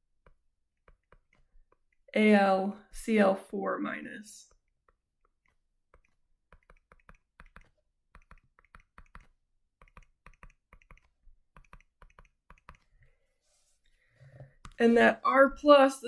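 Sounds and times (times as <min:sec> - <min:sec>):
faint clicking and tapping: 0:00.0 - 0:02.2, 0:04.5 - 0:13.2.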